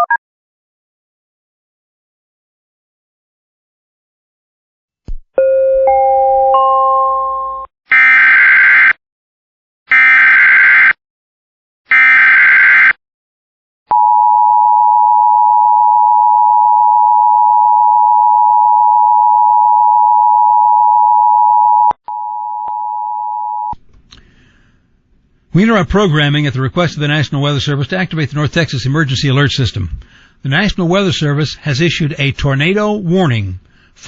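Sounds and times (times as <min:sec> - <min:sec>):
quiet tone: 0:13.9 - 0:23.8.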